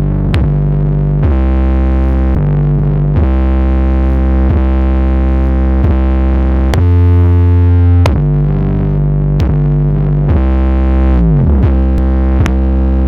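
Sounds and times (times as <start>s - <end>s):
deep bass music from car speakers: 0.0s - 13.0s.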